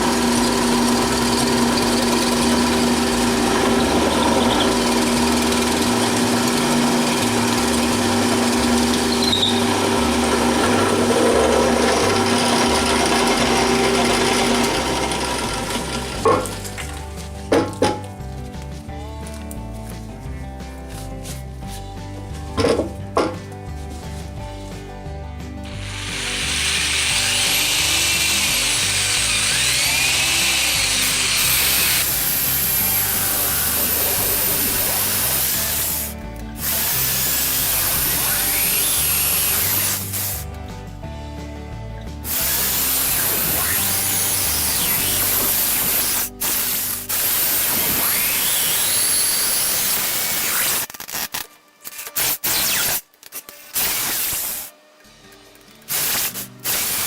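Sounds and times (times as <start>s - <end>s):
power tool whine: 0.0s - 16.6s, 25.7s - 40.4s, 42.3s - 50.9s, 55.9s - 57.0s
background music: 0.1s - 57.0s.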